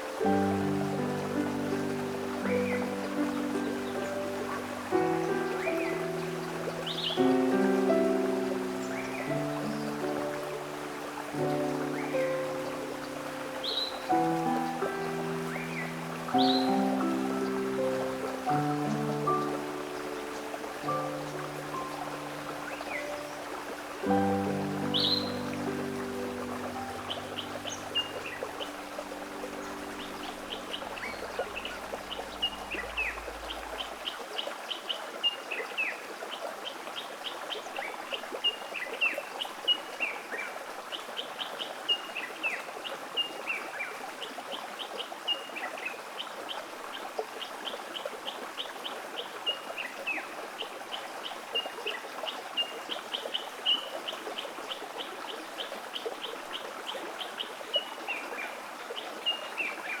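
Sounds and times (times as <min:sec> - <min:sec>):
flowing stream rush: 0:00.0 - 1:00.0
birds calling with high chirps: 0:00.3 - 0:34.0.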